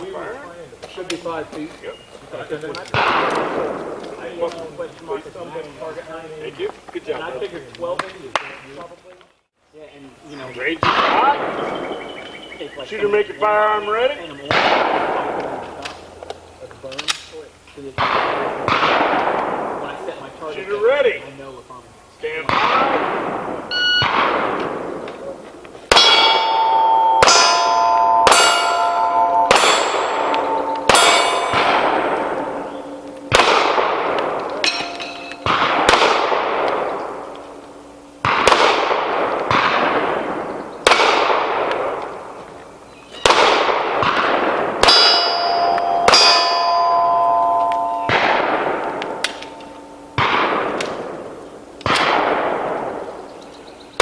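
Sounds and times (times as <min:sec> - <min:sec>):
pistol shots: 0:02.8 - 0:04.6, 0:14.5 - 0:16.3, 0:18.0 - 0:20.2, 0:22.4 - 0:53.4
steel target clanging: 0:25.9 - 0:41.9, 0:44.0 - 0:52.4.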